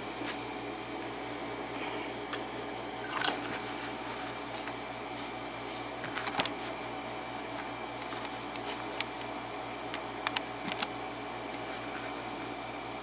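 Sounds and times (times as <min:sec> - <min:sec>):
steady hum: 0:00.0 - 0:13.0.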